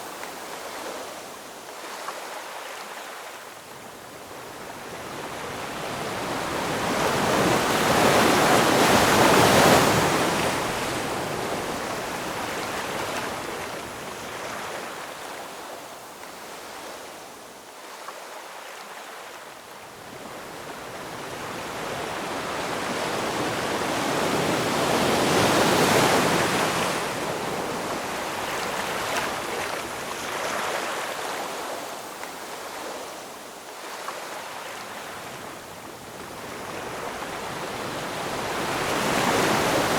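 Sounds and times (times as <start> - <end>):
ocean waves breaking on shore: 0.0 - 39.9.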